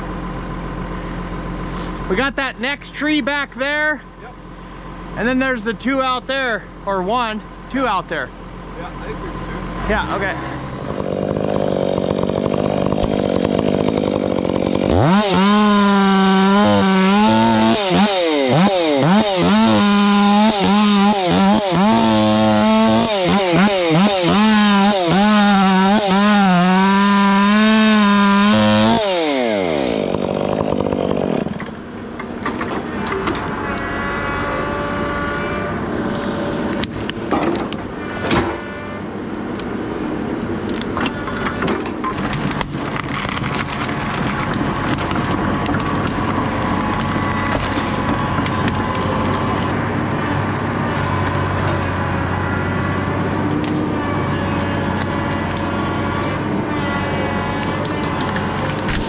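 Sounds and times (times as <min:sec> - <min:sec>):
chainsaw cutting wood: 0:09.8 - 0:35.3, 0:42.1 - 0:59.0.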